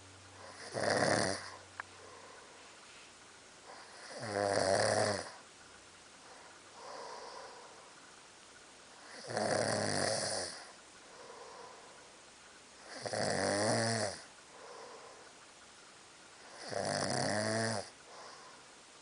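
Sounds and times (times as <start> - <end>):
quiet breath: 0.0 - 4.2, 6.1 - 8.2, 10.5 - 13.0, 14.2 - 16.7, 17.9 - 19.0
person snoring: 0.4 - 2.3, 3.7 - 5.4, 9.0 - 11.9, 12.8 - 15.3, 16.4 - 18.5.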